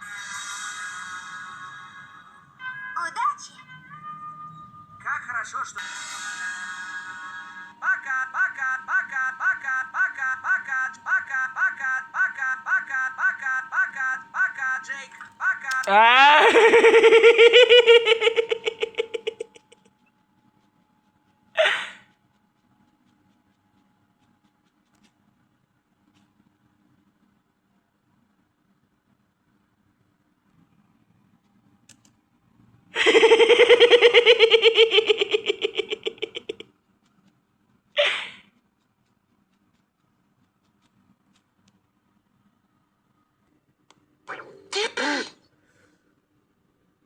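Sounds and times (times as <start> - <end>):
high-pitched trilling voice: 5.0 - 16.6, 44.3 - 45.4
cartoon voice giggling: 7.4 - 14.8, 15.7 - 19.8, 33.0 - 36.6, 44.3 - 45.4.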